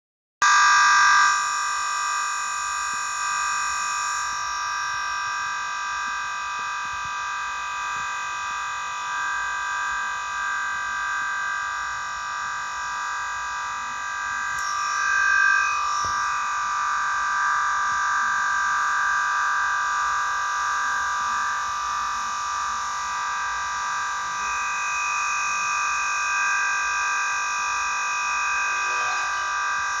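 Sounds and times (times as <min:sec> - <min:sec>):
harsh electronic drone: 0:28.6 - 0:30.0.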